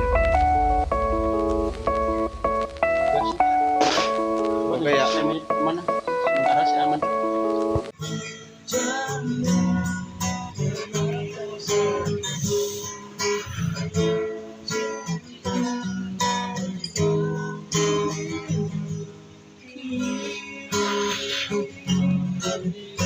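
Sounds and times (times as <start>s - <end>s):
acoustic guitar strumming chords: 0.0s - 23.0s.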